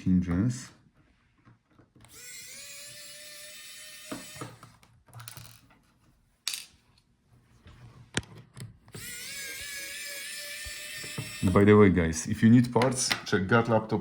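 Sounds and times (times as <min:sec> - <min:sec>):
electric screwdriver whirring: 0:02.0 - 0:04.8, 0:08.9 - 0:11.7
screws and parts clattering: 0:04.2 - 0:05.8.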